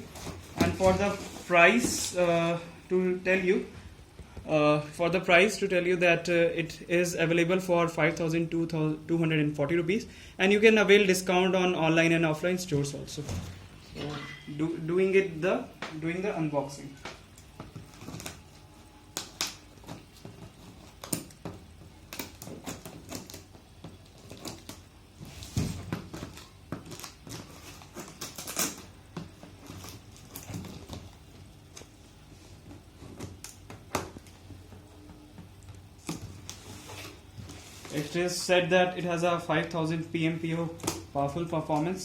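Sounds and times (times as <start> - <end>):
packaging rustling: 17.4 - 34.6.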